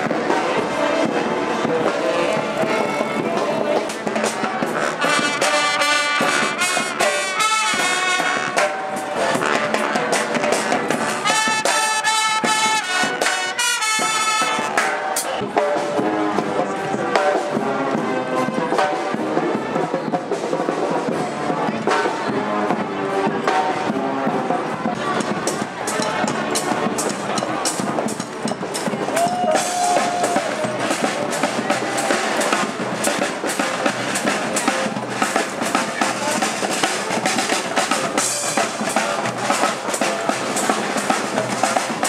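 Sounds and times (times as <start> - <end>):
street brass band playing: 0.0 - 42.0.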